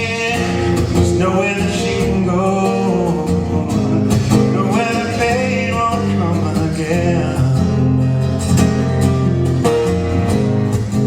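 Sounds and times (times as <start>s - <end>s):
person singing: 0.0s - 8.0s
acoustic guitar playing: 0.0s - 11.0s.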